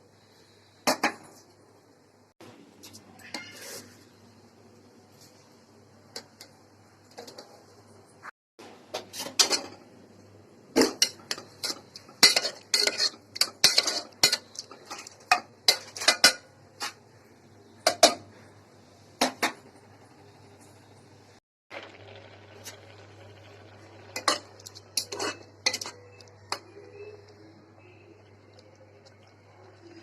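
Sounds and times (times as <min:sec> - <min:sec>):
metal spoon scraping metal pot: 0:11.0 - 0:17.0, 0:24.2 - 0:28.0.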